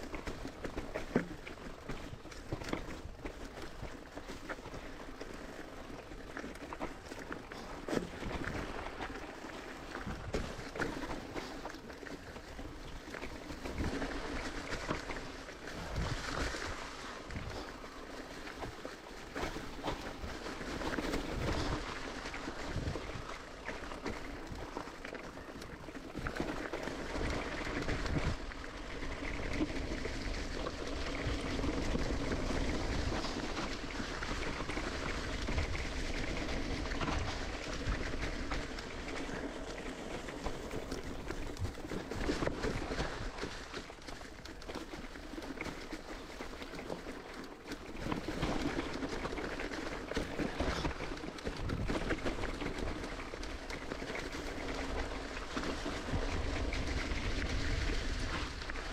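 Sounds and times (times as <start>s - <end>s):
bike tyres rolling on dirt: 0.0s - 58.9s
wind on microphone: 15.7s - 17.9s, 54.2s - 58.9s.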